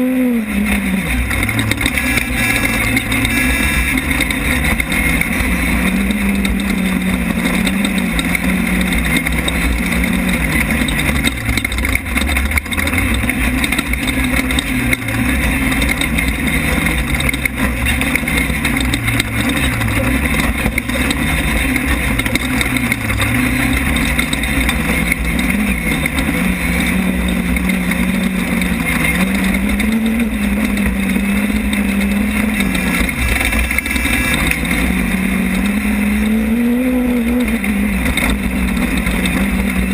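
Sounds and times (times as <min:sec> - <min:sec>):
drivetrain noise: 0:00.0 - 0:39.9
race car engine revving: 0:00.0 - 0:39.9.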